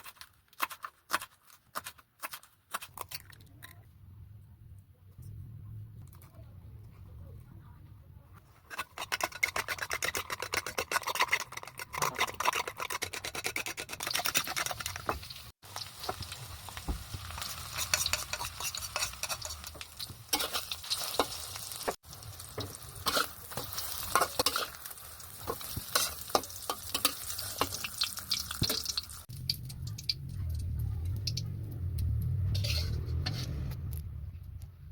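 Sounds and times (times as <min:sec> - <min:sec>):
utensil beating eggs in bowl: 0:08.7 - 0:15.2
omelette sizzling in oil: 0:15.2 - 0:29.5.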